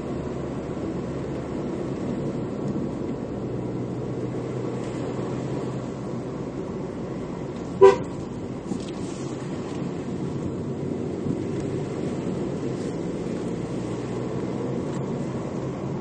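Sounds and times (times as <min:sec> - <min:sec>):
car horn toot: 0:07.8 - 0:08.2.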